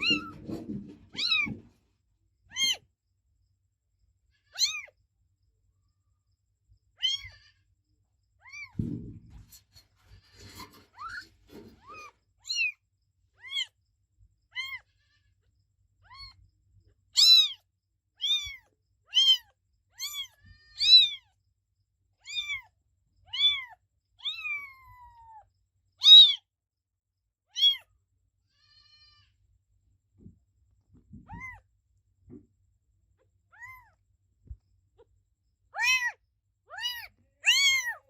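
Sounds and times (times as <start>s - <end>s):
kitten meowing: 0.0s - 0.5s, 1.2s - 1.6s, 2.5s - 2.8s, 4.4s - 5.0s, 7.0s - 7.6s, 8.4s - 8.8s, 10.9s - 12.8s, 13.4s - 13.8s, 14.5s - 14.9s, 16.0s - 16.4s, 17.2s - 17.6s, 18.2s - 21.3s, 22.2s - 22.7s, 23.3s - 25.4s, 26.0s - 26.5s, 27.5s - 27.9s, 31.2s - 31.6s, 33.5s - 34.0s, 35.7s - 38.0s.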